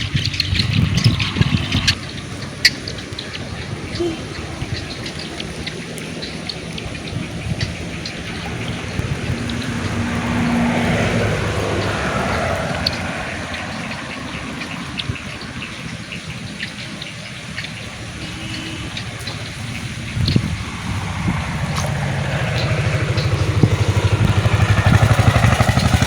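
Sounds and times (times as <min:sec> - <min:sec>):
outdoor noise: 0:00.0 - 0:26.0
vehicle engine passing by: 0:00.0 - 0:26.0.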